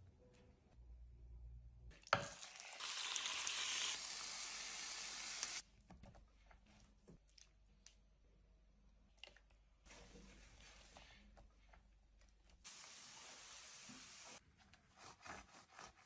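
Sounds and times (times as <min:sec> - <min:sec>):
food sizzling in a frying pan: 0:02.2 - 0:05.6, 0:12.7 - 0:14.4.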